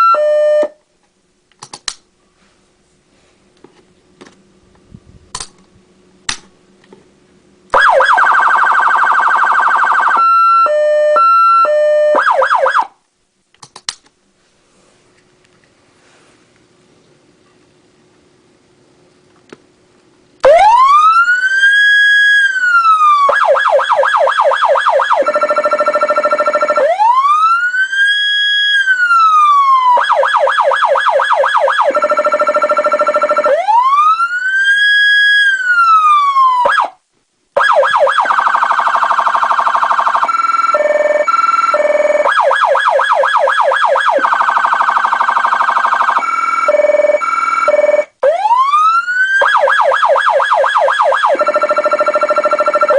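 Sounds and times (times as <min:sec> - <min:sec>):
electronic siren cycling tones: 0:00.0 - 0:00.8, 0:07.7 - 0:12.9, 0:20.4 - 0:36.9, 0:37.6 - 0:52.9.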